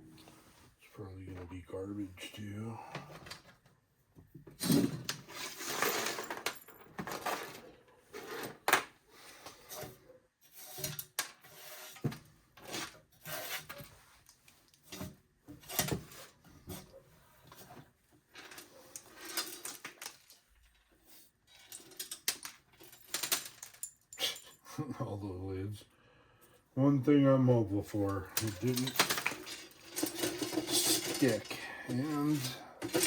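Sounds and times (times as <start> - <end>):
hard parts knocking and clinking: 21.5 - 24.5, 28.0 - 33.0.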